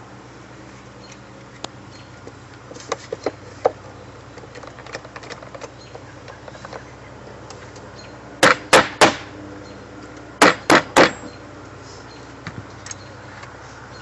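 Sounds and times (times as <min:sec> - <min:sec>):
sharp hammer strikes: 0:08.4 - 0:09.3, 0:10.4 - 0:11.3.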